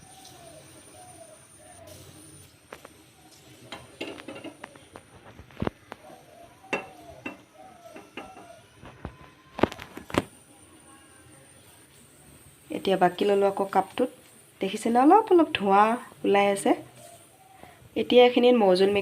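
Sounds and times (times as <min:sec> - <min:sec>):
kitchen utensils clinking: 0:03.6 - 0:04.8, 0:06.6 - 0:08.6.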